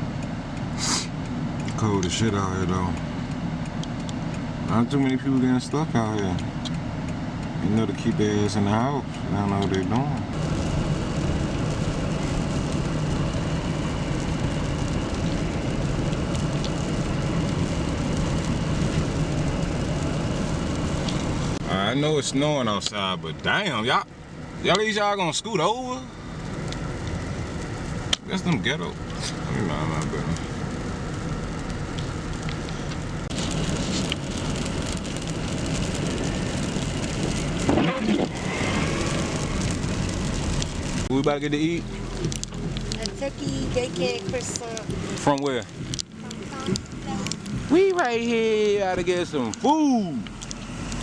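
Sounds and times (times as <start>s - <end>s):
car engine hum: 0.0s - 51.0s
tyres crackling on wet snow: 0.7s - 6.8s, 7.5s - 51.0s
tyres on snow and slush: 46.2s - 51.0s.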